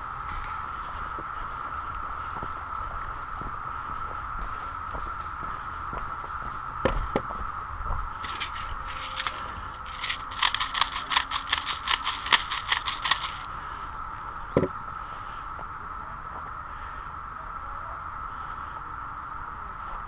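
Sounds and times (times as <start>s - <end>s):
steady hum: 3.6s - 16.0s
sharp scraping crunching strokes: 8.2s - 13.5s.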